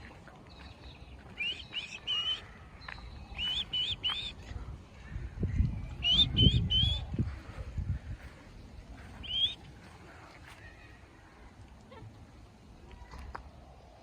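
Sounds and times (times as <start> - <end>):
bird whistling calls: 1.3 - 4.4, 5.9 - 7.1, 9.2 - 9.7.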